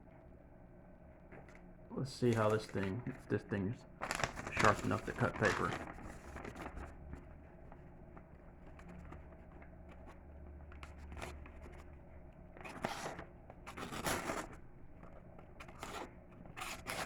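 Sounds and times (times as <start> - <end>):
knife cutting through paper: 4.0 - 7.0, 10.8 - 11.9, 12.6 - 17.0.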